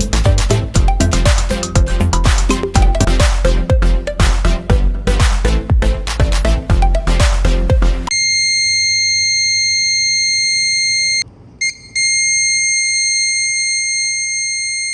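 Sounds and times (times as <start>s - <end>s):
electronic buzzer tone: 8.1s - 14.9s.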